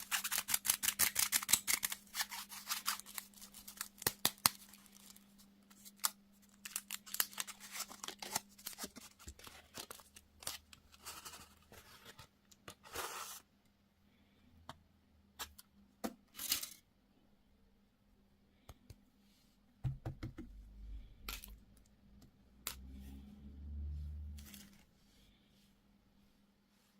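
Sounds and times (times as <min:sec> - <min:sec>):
plastic packaging tearing: 0:00.0 - 0:10.7.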